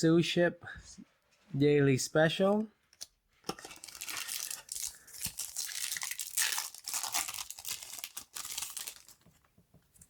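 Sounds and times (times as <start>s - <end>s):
foil wrapper crinkling and tearing: 3.6s - 9.2s.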